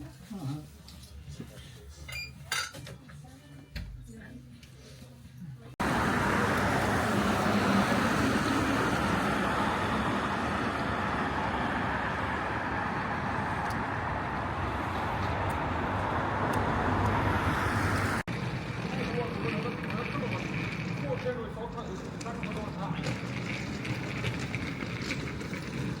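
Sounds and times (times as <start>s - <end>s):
road traffic running by: 5.8s - 26.0s.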